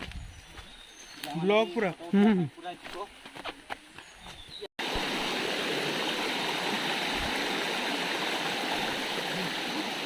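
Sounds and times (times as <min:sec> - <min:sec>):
flowing water rushing: 0:04.8 - 0:10.0.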